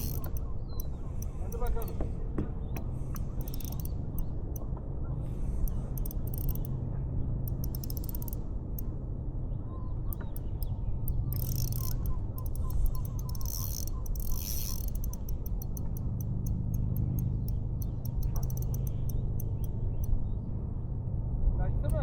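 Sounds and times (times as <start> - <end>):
fishing reel ticking: 0.0 - 2.0, 3.0 - 4.6, 5.6 - 6.7, 7.5 - 8.9, 10.1 - 20.2.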